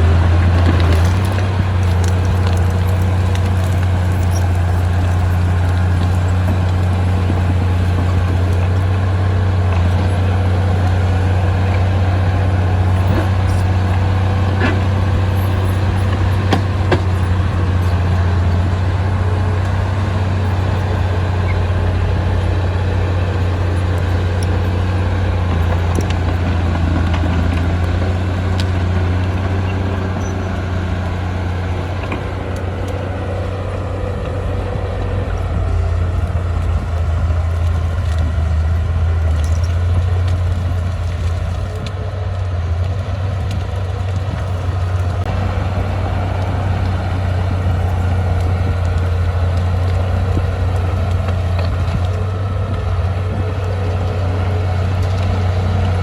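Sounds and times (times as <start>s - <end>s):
bulldozer diesel engine droning: 0.0s - 56.0s.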